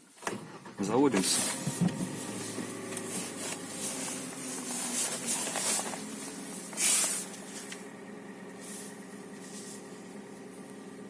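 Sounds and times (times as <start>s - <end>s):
car engine idling: 0.0s - 11.0s
short hissing rustles: 1.3s - 7.8s, 8.5s - 10.1s.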